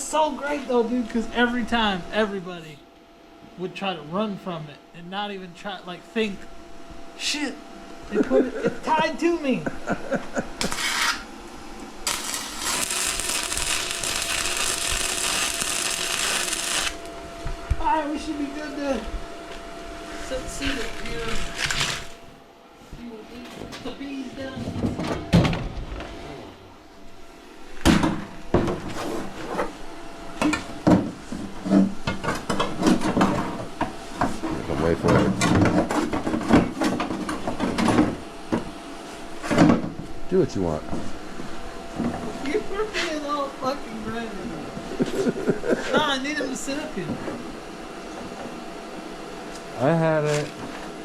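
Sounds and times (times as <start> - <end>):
welding arc crackling: 10.6 - 11.2, 12.0 - 17.1.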